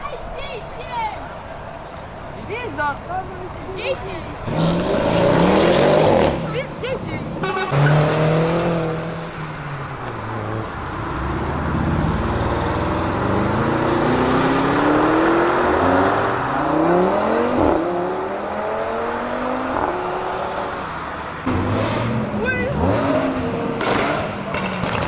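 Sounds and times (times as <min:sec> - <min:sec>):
sports car engine accelerating: 0:00.0 - 0:25.0
sharp crack: 0:22.9 - 0:25.0.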